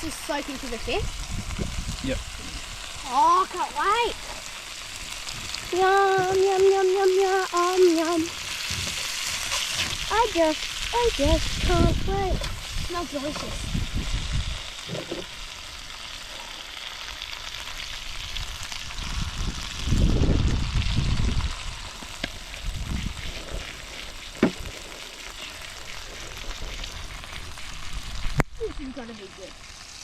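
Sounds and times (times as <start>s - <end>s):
fish sizzling in a frying pan: 0.0s - 30.0s
low rumble: 18.1s - 23.9s.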